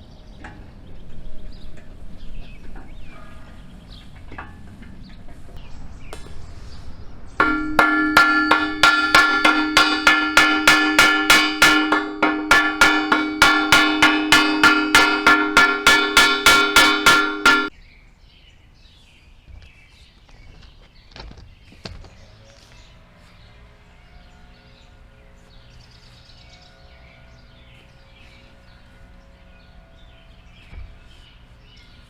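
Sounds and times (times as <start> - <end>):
hammer striking ringing steel: 7.4 - 17.7, 24.0 - 32.0.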